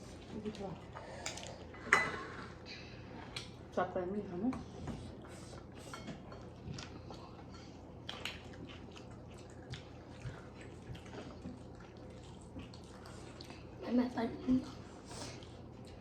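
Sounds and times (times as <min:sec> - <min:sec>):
person chewing: 0:06.4 - 0:13.6.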